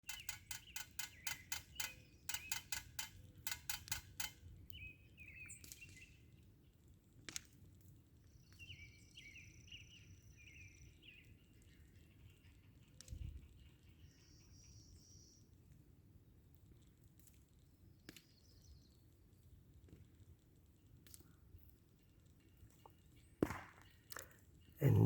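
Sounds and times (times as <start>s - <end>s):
woodpecker tapping: 0.0s - 4.4s.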